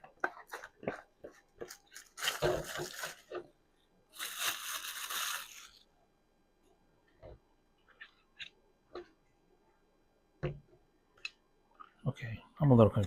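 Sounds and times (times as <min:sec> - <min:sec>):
plastic crinkling: 0:01.6 - 0:03.4, 0:04.1 - 0:05.8.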